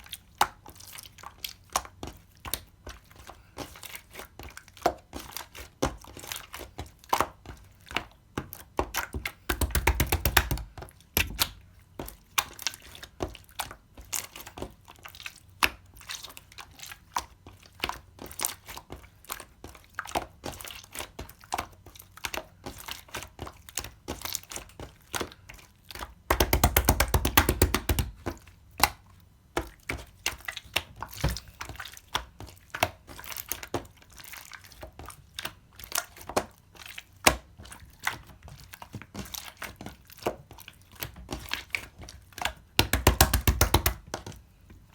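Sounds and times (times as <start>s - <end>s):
slime squishing and popping: 8.4s - 11.6s, 25.9s - 29.0s, 41.0s - 44.3s.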